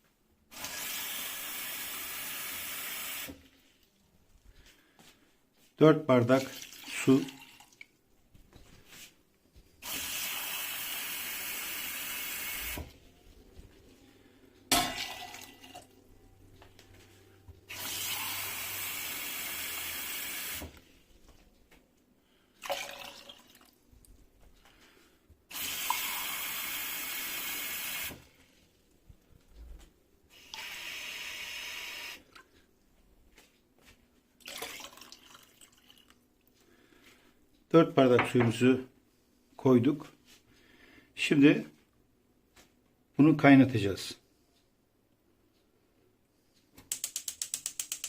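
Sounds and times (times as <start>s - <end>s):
water pouring into a pot: 6.4s - 7.8s, 14.8s - 15.9s, 22.6s - 23.7s, 25.5s - 28.2s, 34.4s - 36.2s.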